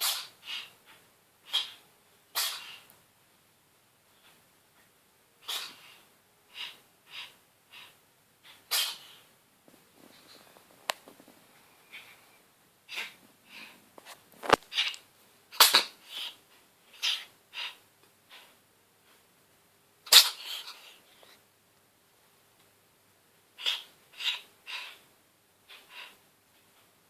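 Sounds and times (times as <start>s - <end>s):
cat sneezing: 0.0s - 0.7s, 1.4s - 2.9s, 5.4s - 9.2s, 15.5s - 18.5s, 20.0s - 21.0s, 23.6s - 25.0s.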